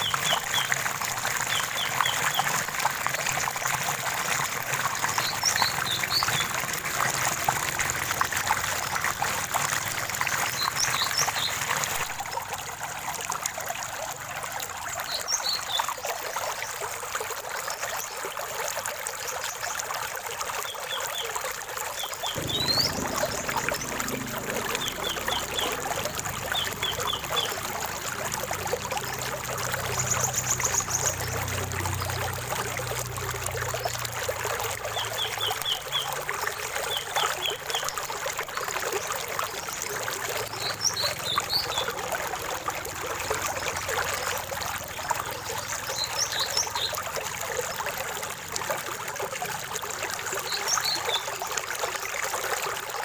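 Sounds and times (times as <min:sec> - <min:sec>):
stream trickling and splashing: 0:00.0 - 0:53.0
birds chirping: 0:22.0 - 0:31.5
bird trill: 0:22.3 - 0:29.3.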